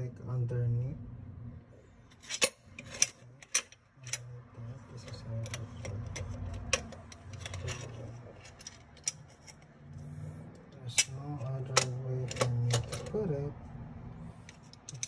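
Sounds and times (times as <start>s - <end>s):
hard objects clicking and knocking: 5.0s - 9.7s, 10.9s - 13.2s, 14.4s - 15.0s.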